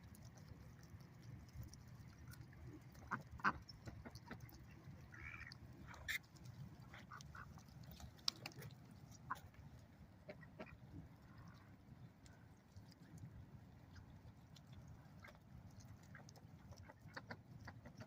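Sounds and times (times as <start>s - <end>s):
ducks quacking: 3.0s - 6.3s.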